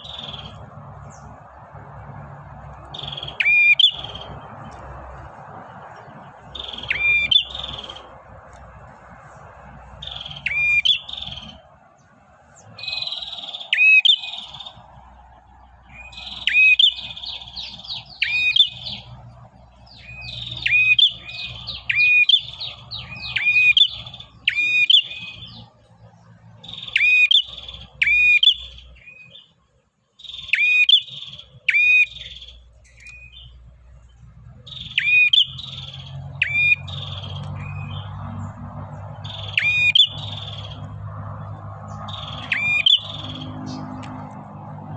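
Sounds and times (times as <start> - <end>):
bird rapid sharp chirping: 0.0 - 1.4, 2.8 - 4.9, 5.7 - 8.2, 9.2 - 11.7, 12.6 - 15.0, 15.9 - 25.7, 30.2 - 33.6, 34.7 - 44.3.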